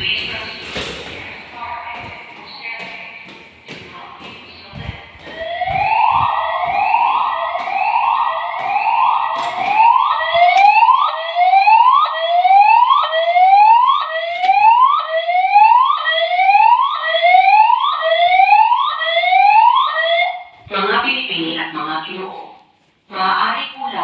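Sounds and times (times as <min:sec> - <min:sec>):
fire alarm rising electronic sweep: 0:05.3 - 0:20.5.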